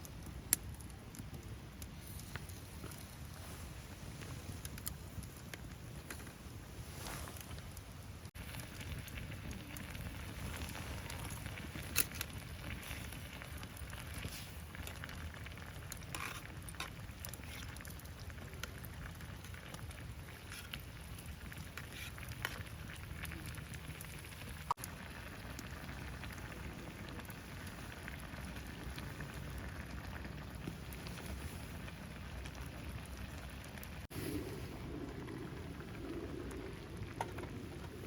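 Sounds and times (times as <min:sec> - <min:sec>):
campfire crackling and popping: 0:00.0 - 0:38.0.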